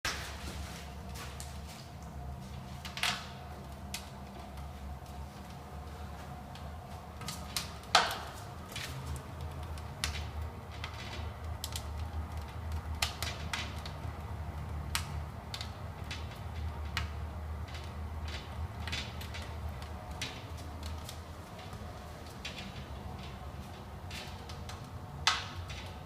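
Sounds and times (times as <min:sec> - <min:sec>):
wood fire crackling: 0:00.1 - 0:26.0.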